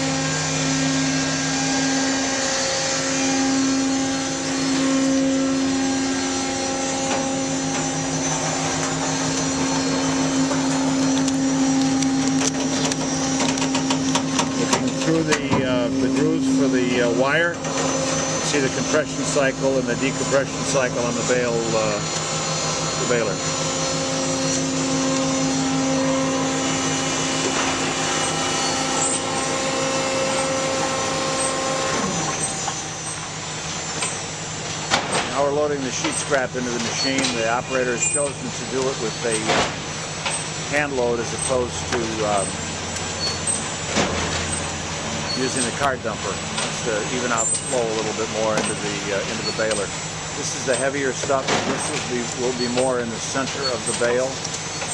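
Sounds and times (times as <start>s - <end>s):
hydraulic machine humming: 0.0s - 54.9s.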